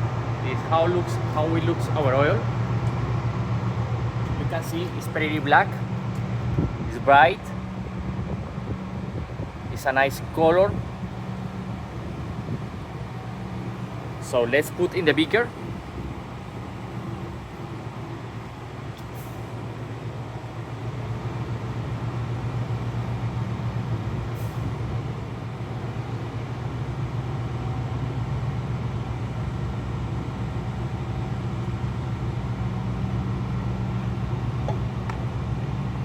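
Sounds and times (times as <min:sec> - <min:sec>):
industrial machinery humming: 0:00.0 - 0:36.0.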